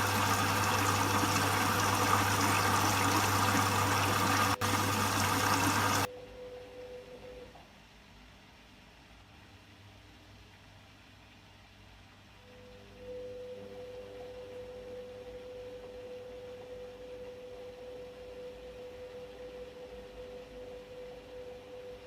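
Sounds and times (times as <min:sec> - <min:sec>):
washing machine electrical hum: 0:00.0 - 0:06.1.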